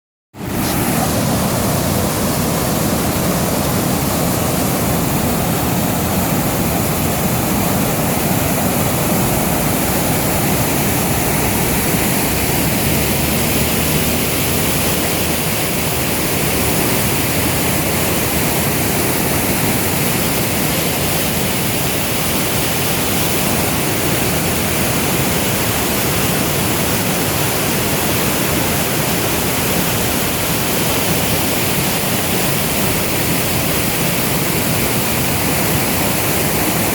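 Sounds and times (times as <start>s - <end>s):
river rushing over rapids: 0.4s - 36.9s.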